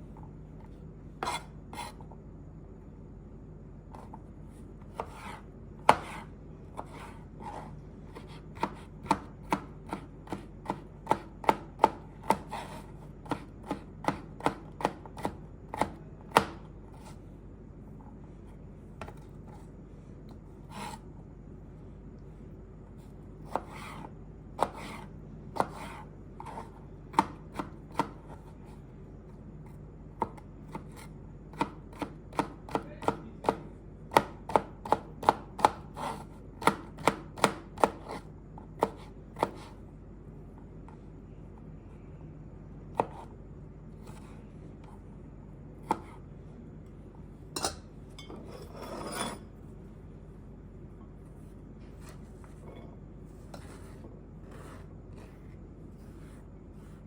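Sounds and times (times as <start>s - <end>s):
knife chopping on cutting board: 4.9s - 17.2s, 23.5s - 28.5s, 30.2s - 39.8s, 42.9s - 43.3s, 45.8s - 46.2s.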